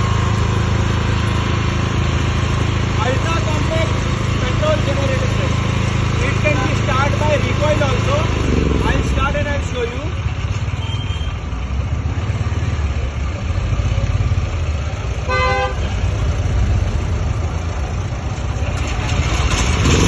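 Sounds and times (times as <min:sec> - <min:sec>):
generator humming: 0:00.0 - 0:12.2, 0:15.0 - 0:20.0
vehicle horn toot: 0:10.7 - 0:11.4, 0:15.3 - 0:15.9.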